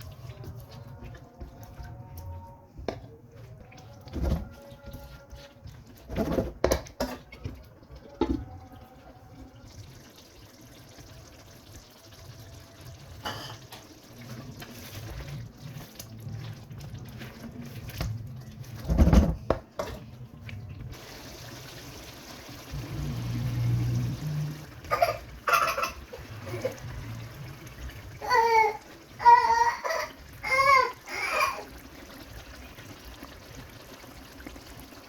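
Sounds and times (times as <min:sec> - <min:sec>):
wet liquid sounds: 0:00.0 - 0:35.0.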